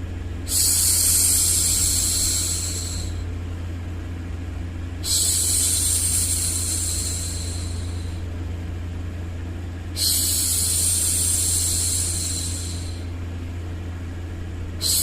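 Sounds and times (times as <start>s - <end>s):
low white noise: 0.0s - 15.0s.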